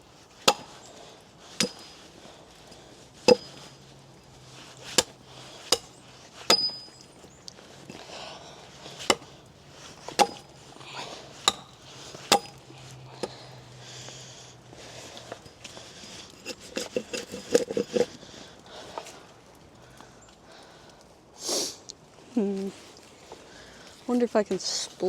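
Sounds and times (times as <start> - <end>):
axe chopping wood: 0.4 - 0.8, 1.6 - 2.1, 3.2 - 3.7, 4.8 - 7.0, 9.0 - 13.4.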